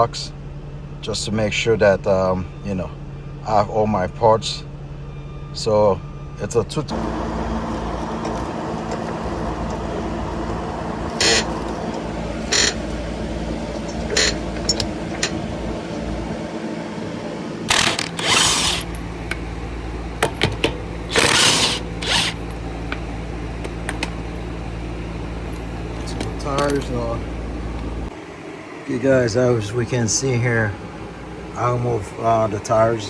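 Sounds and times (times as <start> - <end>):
steady low hum: 6.7 - 33.0
tools rattling and clicking: 7.7 - 16.4, 17.7 - 19.4, 20.2 - 23.0, 25.4 - 27.2.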